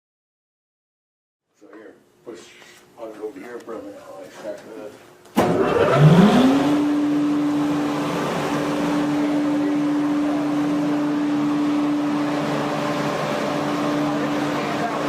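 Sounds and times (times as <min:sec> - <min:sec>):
sawmill motor humming: 0:05.4 - 0:15.0.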